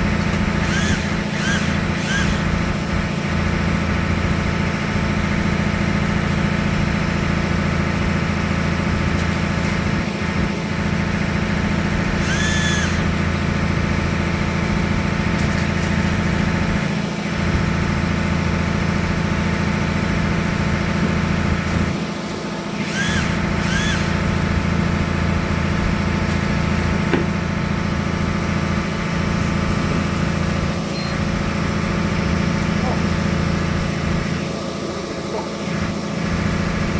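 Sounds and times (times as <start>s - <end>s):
boat engine droning: 9.8s - 36.9s.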